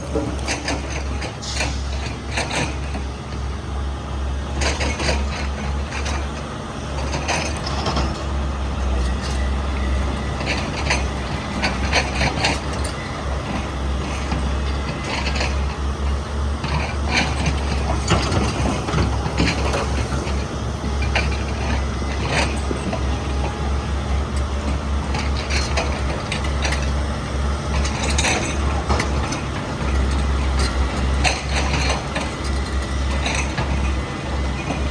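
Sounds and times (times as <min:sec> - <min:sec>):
metal clanks and knocks: 0:00.0 - 0:03.1, 0:27.7 - 0:34.9
excavator diesel engine running: 0:00.0 - 0:34.9.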